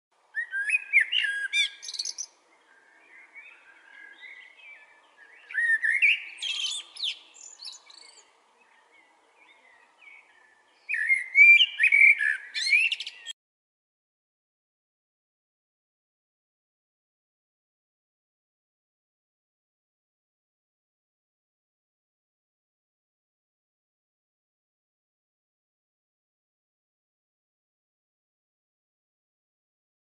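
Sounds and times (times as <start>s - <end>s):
songbird chirps and whistles: 0.3s - 13.4s
soft bird twittering: 0.4s - 13.4s.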